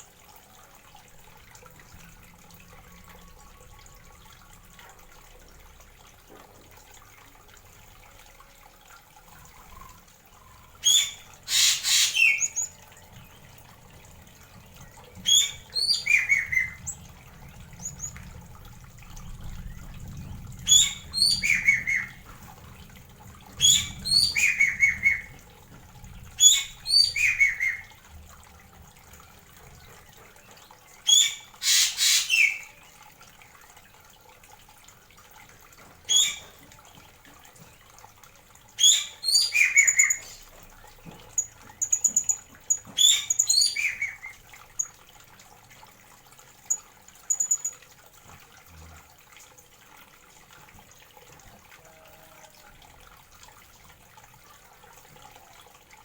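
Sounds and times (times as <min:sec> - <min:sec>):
parrot calling: 0:10.8 - 0:12.7, 0:31.1 - 0:32.6
thin bird peeps: 0:10.8 - 0:12.8.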